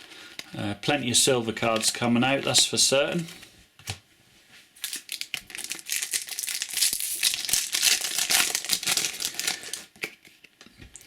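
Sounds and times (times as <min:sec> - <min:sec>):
wrapper crinkling and tearing: 0:04.8 - 0:10.1.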